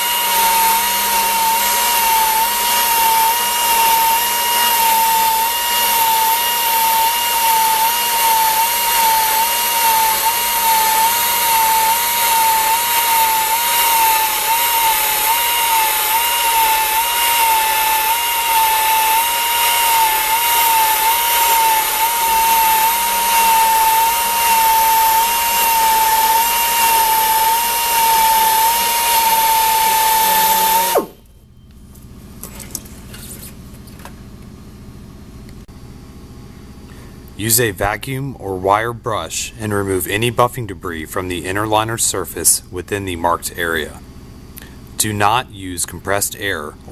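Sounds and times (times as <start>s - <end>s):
tire buffer whining: 0.0s - 31.3s.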